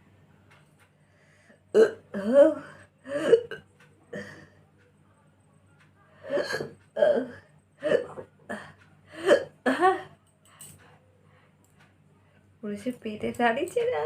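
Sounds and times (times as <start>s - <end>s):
woman hiccuping: 1.7s - 4.4s, 6.3s - 10.1s.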